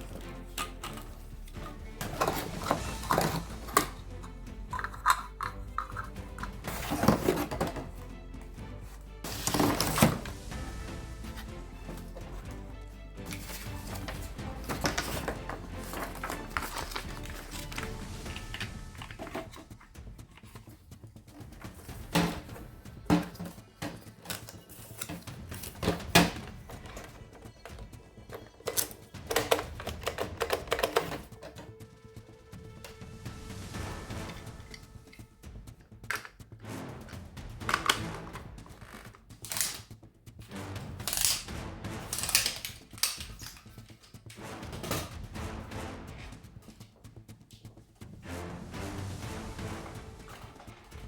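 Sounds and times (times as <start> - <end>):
background music: 0.0 - 51.0
sharp clicking or rattling: 37.6 - 44.4.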